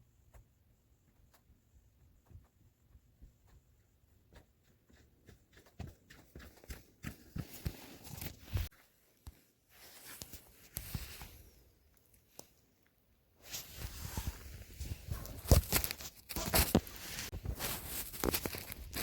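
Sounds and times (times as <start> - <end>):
rustling: 13.4 - 19.0.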